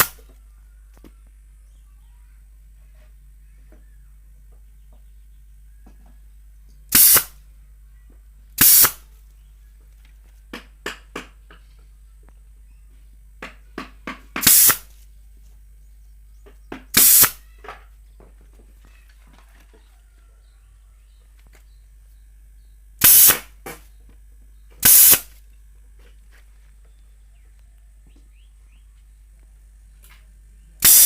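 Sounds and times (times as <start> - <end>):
pneumatic nail gun firing: 0.0 - 0.2, 6.9 - 7.4, 8.6 - 9.1, 14.4 - 14.9, 16.9 - 17.4, 23.0 - 23.9, 24.8 - 25.4, 30.8 - 31.0.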